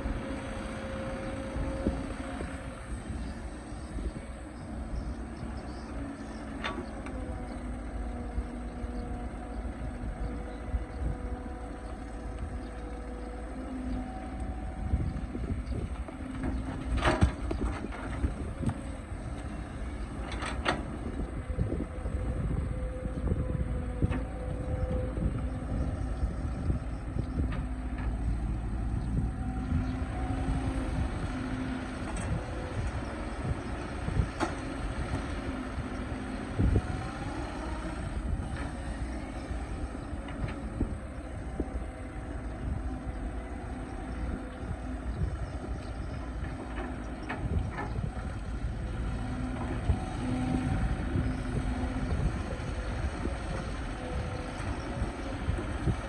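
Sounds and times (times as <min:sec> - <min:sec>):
excavator engine rumbling: 0:00.0 - 0:56.0.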